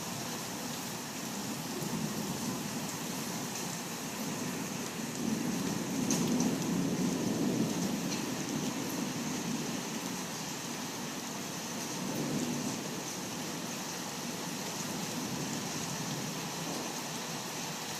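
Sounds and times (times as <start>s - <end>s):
steady rain: 0.0s - 17.9s
low rumble of thunder: 1.5s - 3.0s, 4.2s - 10.2s, 11.8s - 13.6s.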